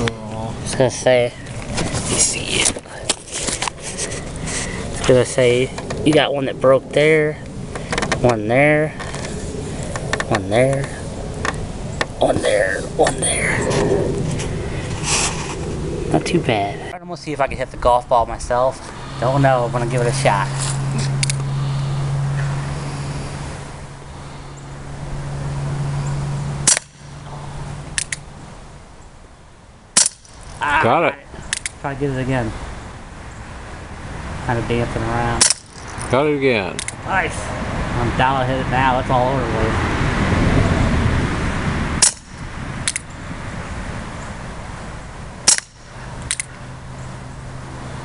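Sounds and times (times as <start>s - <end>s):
rushing wind noise: 0.0s - 29.0s, 30.2s - 48.0s
steady low hum: 0.0s - 48.0s
air pistol shots cracking: 26.6s - 27.0s, 30.0s - 30.4s, 45.4s - 46.5s
air pistol shot: 45.4s - 45.9s.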